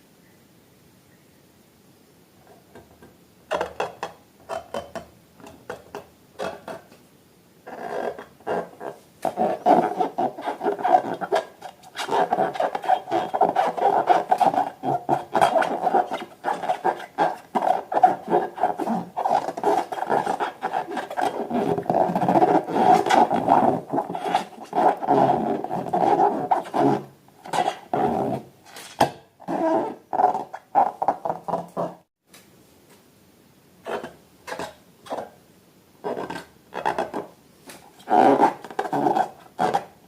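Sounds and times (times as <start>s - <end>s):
rubber balloons squeaking: 5.7s - 6.9s, 7.7s - 28.5s, 29.4s - 32.1s, 36.0s - 37.3s, 37.9s - 40.0s.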